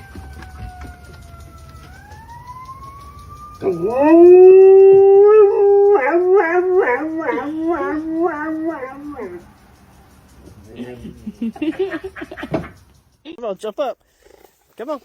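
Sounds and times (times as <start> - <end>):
faint siren wailing: 0.0 - 9.6
dog howling: 3.6 - 9.6.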